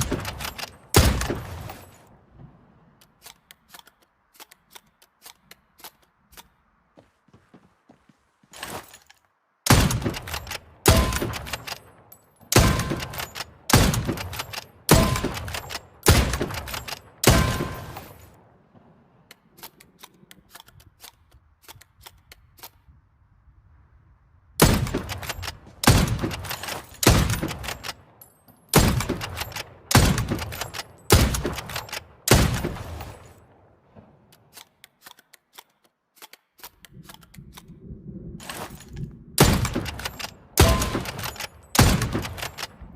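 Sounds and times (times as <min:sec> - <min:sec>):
rifle shots echoing: 0:00.0 - 0:02.1, 0:09.7 - 0:19.6, 0:24.6 - 0:34.6, 0:39.4 - 0:42.9.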